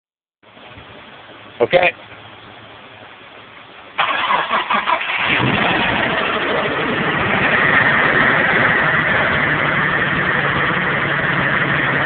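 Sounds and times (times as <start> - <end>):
car engine idling: 0.5 - 12.0
car engine cranking: 4.0 - 12.0.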